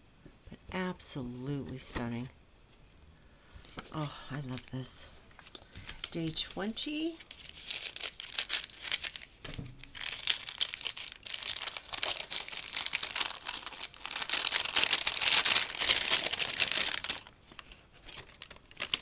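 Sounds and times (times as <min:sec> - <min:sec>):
wrapping paper crinkling and tearing: 0:06.0 - 0:19.0.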